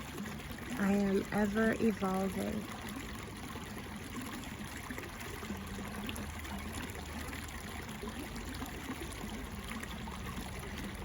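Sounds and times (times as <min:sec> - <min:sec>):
trickle of running water: 0:00.0 - 0:11.0.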